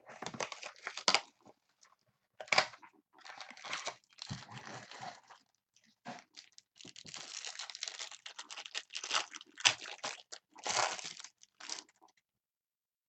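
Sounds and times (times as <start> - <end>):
foil wrapper crinkling: 0.4 - 1.3, 6.2 - 12.1.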